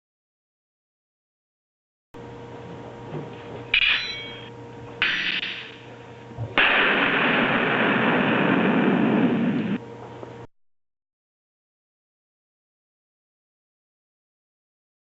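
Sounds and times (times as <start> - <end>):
steady electrical hum: 2.2 - 10.5
metallic ringing strikes: 3.7 - 5.9
loud blast-like rush: 6.6 - 9.8.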